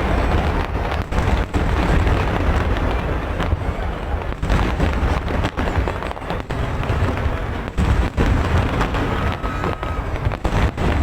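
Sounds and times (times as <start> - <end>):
fireworks booming and banging: 0.0 - 11.0
faint firework whistle: 8.2 - 11.0.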